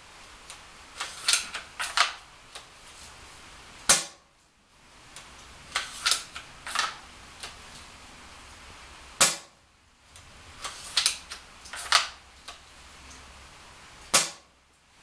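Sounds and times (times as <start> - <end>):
airsoft rifle shot: 3.9 - 4.2, 9.2 - 9.6, 14.1 - 14.5.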